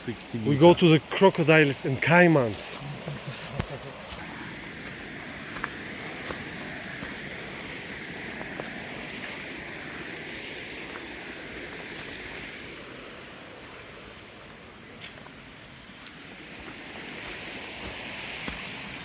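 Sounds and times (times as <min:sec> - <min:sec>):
flowing river rushing: 0:00.0 - 0:19.0.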